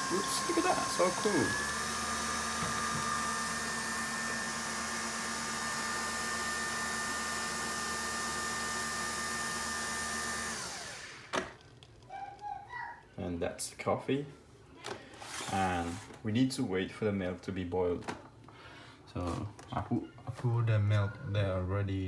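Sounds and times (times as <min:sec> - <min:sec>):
coffee machine motor whirring: 0:00.0 - 0:11.6.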